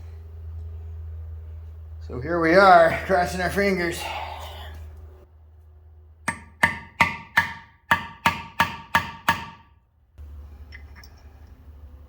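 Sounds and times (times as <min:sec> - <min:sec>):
hammer striking steel: 0:06.3 - 0:09.8.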